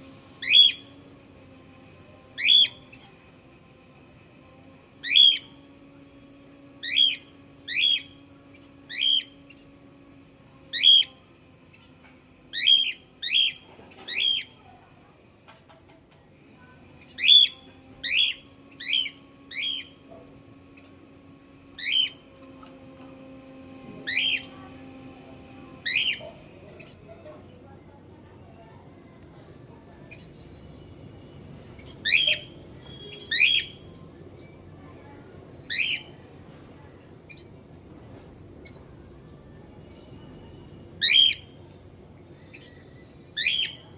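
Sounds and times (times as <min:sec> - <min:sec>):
cockatiel calling: 0:02.4 - 0:03.1, 0:05.0 - 0:05.5, 0:06.8 - 0:08.2, 0:10.7 - 0:11.1, 0:12.5 - 0:14.6, 0:17.1 - 0:20.0, 0:21.8 - 0:22.2, 0:24.0 - 0:24.6, 0:25.8 - 0:27.0, 0:31.8 - 0:33.8, 0:35.7 - 0:36.1, 0:41.0 - 0:41.5, 0:43.4 - 0:43.9.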